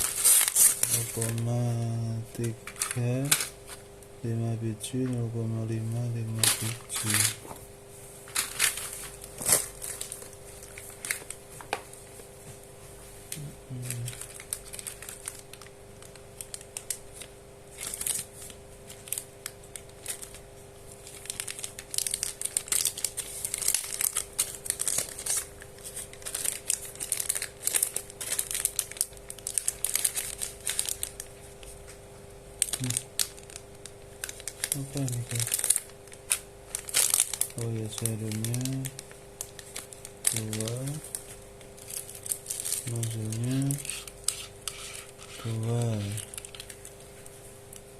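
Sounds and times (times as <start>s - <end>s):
plastic packaging crinkling: 0.0s - 4.0s, 6.0s - 7.6s, 8.3s - 12.1s, 13.3s - 32.0s, 32.6s - 47.9s
faint steady hum: 0.0s - 47.9s.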